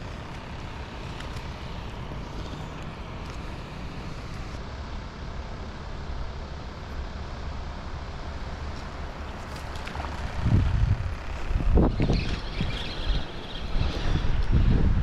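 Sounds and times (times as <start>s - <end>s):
wind noise on microphone: 9.3s - 15.0s.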